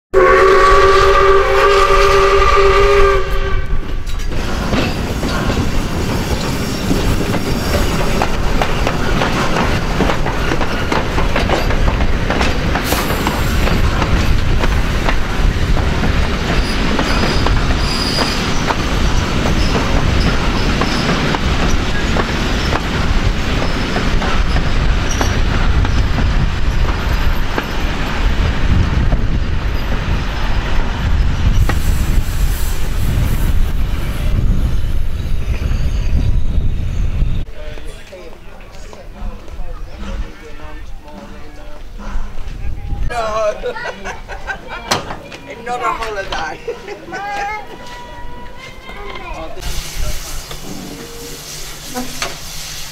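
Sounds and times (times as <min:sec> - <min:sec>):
train rumbling: 0:00.1 - 0:52.9
steam locomotive whistle: 0:00.2 - 0:04.0, 0:49.7 - 0:52.9
wheels clicking over rail joints: 0:03.9 - 0:28.4.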